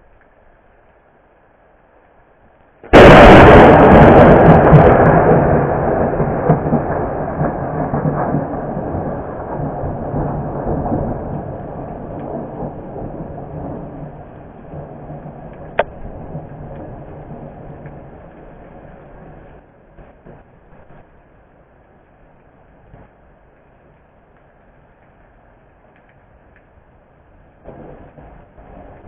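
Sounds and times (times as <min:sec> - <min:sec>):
thunder crack and rumble: 0:02.8 - 0:21.3, 0:27.4 - 0:29.0.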